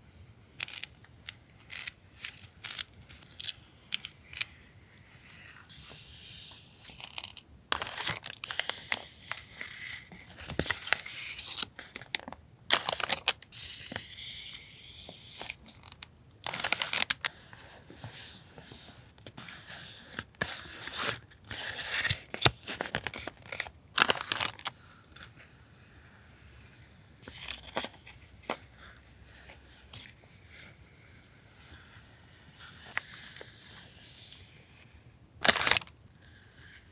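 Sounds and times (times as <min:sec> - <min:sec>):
packaging crinkling and rustling: 0:06.9 - 0:09.4, 0:10.2 - 0:13.4, 0:15.4 - 0:17.3, 0:20.2 - 0:24.7, 0:35.4 - 0:35.9.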